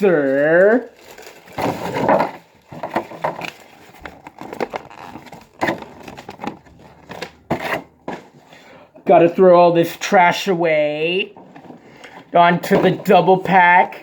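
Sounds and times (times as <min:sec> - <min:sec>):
packaging rustling and crinkling: 0:00.0 - 0:08.7.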